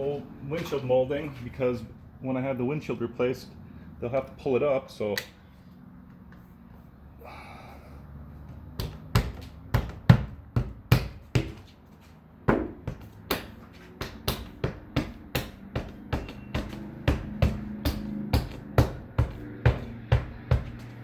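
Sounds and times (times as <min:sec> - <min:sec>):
roof moulding thumps: 0:08.5 - 0:11.8, 0:12.4 - 0:21.0.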